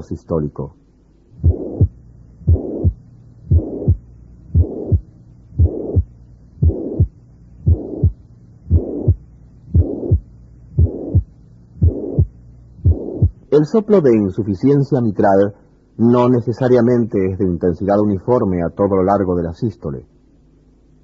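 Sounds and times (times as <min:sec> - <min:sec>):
blowing heart murmur: 0:01.3 - 0:13.5
heartbeat: 0:01.3 - 0:13.5.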